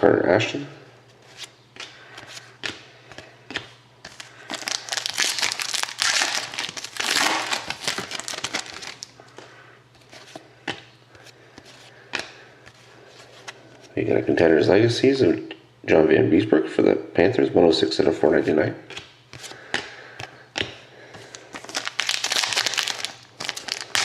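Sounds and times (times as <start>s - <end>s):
foil wrapper tearing and crinkling: 4.5s - 9.1s, 21.6s - 24.0s.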